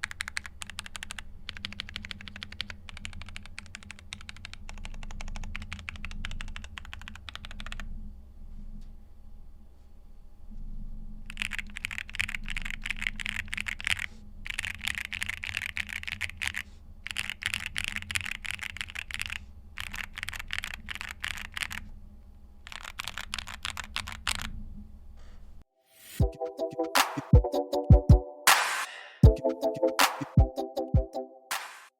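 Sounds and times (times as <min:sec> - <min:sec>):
mechanical keyboard typing: 0:00.0 - 0:07.9, 0:11.3 - 0:21.8, 0:22.6 - 0:24.6.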